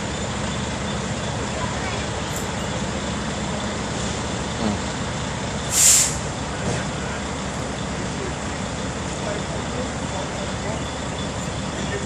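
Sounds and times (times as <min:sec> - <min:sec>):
truck engine running: 0:00.0 - 0:12.0
air brakes hissing: 0:05.6 - 0:06.9.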